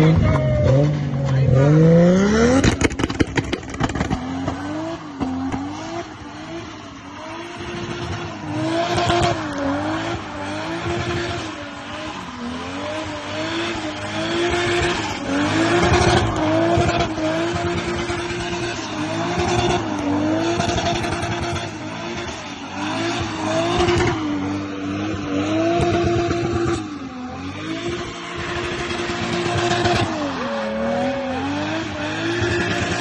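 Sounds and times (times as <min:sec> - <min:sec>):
car engine at high revs: 0:00.0 - 0:33.0.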